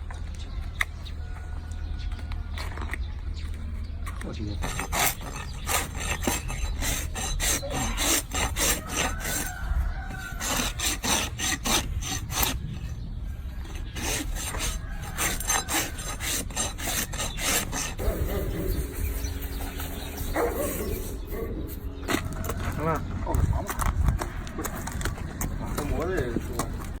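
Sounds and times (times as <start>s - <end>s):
rasp filing a hoof: 4.4s - 27.0s.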